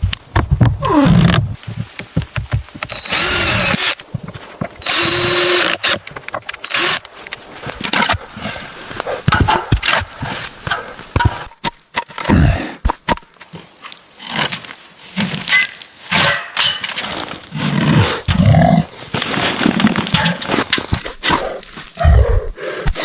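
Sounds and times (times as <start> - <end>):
building work knocks and clatter: 1.4 - 8.6, 9.2 - 13.3, 19.4 - 21.4.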